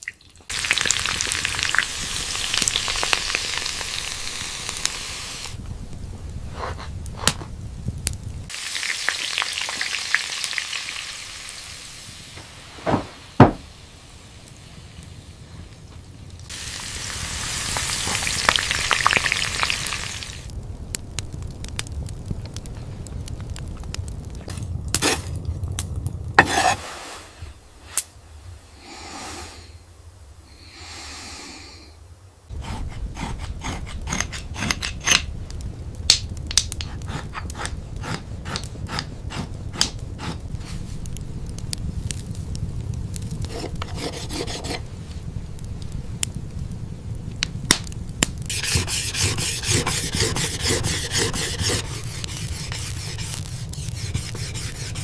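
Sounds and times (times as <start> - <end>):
food sizzling and crackling: 0.0 - 28.0, 36.0 - 55.0
loud hiss: 0.5 - 5.6, 16.5 - 20.5, 26.4 - 32.7.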